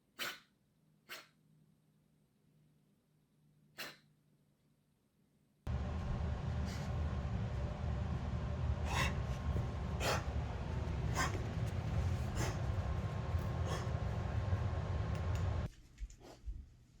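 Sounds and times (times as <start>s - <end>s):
low rumble: 5.7s - 15.7s.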